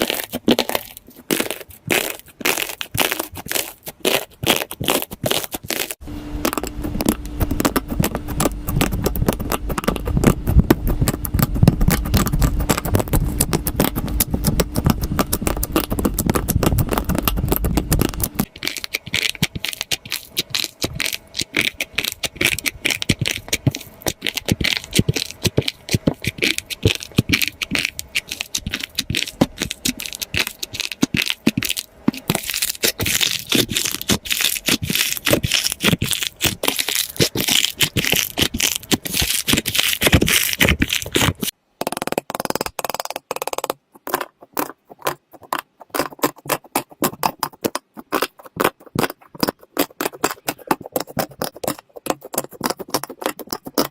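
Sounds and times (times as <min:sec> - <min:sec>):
slime crackling and popping: 0:00.0 - 0:53.9
low hum: 0:06.0 - 0:19.0.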